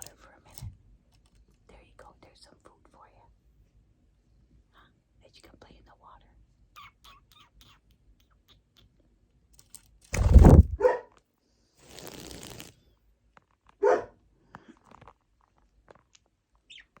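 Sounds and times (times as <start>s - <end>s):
dog barking: 10.8s - 11.2s, 13.8s - 14.2s.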